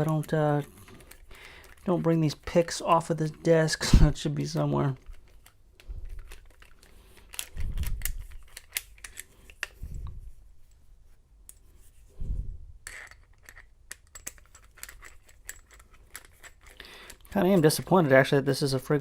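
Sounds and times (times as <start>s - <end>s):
small tools clicking and clattering: 0.0s - 3.8s, 4.5s - 9.8s, 12.8s - 18.2s.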